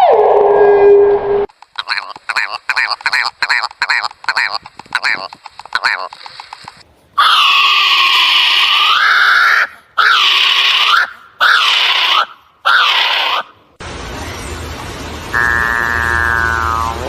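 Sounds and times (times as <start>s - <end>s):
nasal bird calls: 15.4s - 17.0s.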